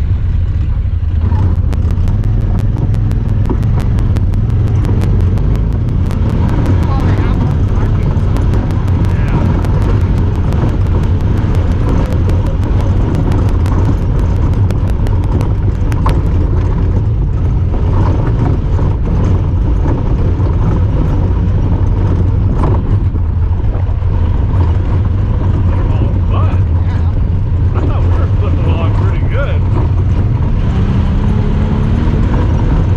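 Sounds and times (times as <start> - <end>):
vehicle engine rumble: 0.0 - 32.9
fast regular ticking: 1.2 - 22.6.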